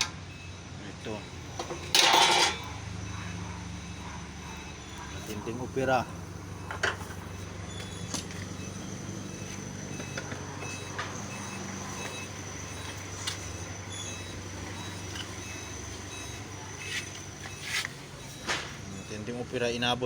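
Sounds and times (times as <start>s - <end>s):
low machine hum: 0.0s - 20.0s
thin high whine: 0.0s - 20.0s.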